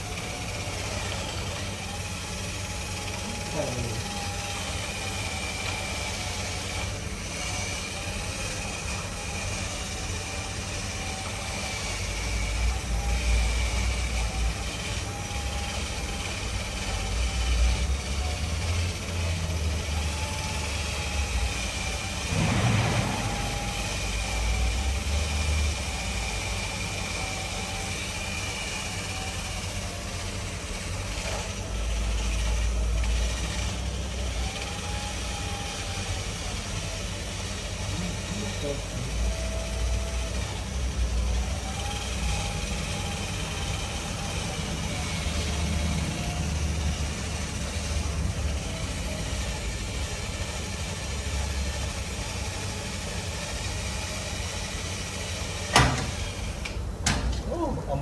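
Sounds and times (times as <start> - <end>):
engine running with whine: 0.0 - 58.0
short loud noise: 22.3 - 24.0
low rumble: 22.3 - 24.2.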